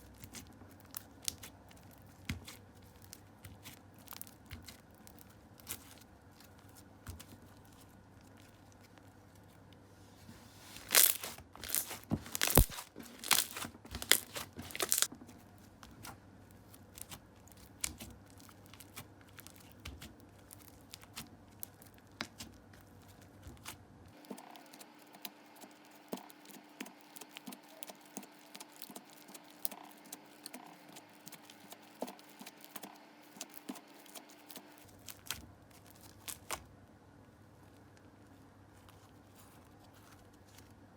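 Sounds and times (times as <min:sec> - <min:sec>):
slime crackling and popping: 0:00.0 - 0:08.5, 0:10.8 - 0:15.1, 0:16.7 - 0:22.6, 0:23.5 - 0:36.6.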